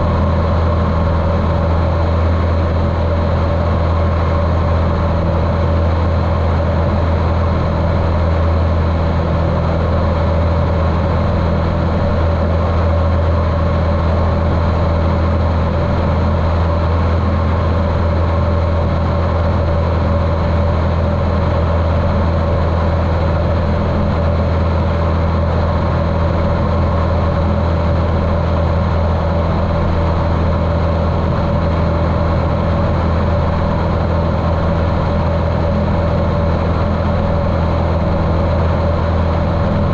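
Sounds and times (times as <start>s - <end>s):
muffled aircraft engine and propeller: 0.0s - 39.9s.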